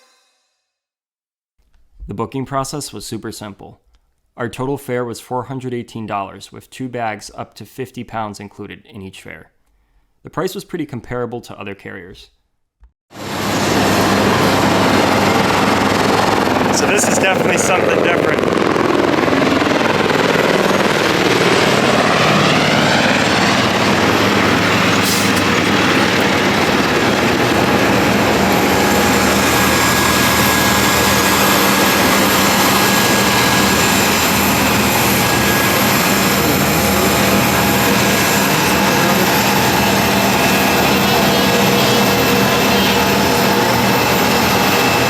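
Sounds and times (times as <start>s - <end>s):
jet engines running: 13.2s - 45.0s.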